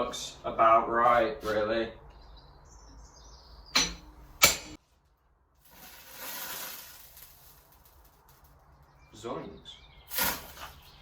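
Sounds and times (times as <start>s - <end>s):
steady hiss: 5.7s - 8.4s.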